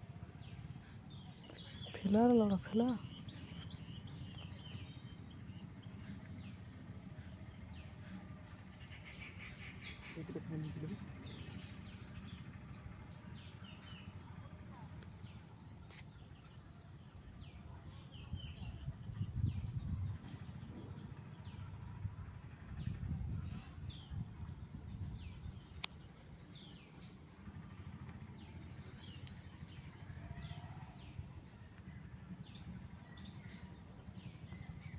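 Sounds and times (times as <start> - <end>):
insect chorus buzzing: 0.0 - 34.9
low rumble: 18.4 - 30.2.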